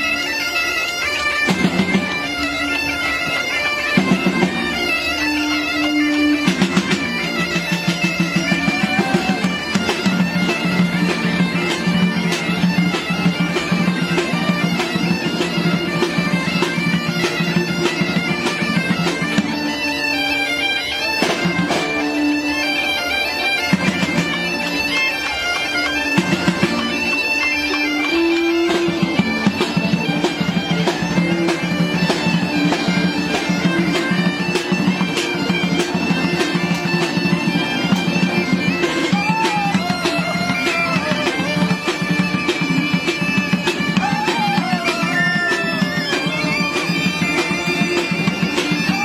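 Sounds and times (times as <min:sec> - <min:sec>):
bagpipes playing melody: 0:00.0 - 0:49.0
drum strikes: 0:01.5 - 0:02.4, 0:06.1 - 0:19.6, 0:28.6 - 0:49.0.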